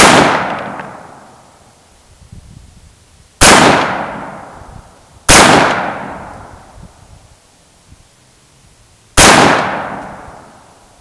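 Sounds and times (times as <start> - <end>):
rifle shots echoing: 0.0 - 1.3, 3.4 - 4.6, 5.3 - 6.6, 9.2 - 10.7.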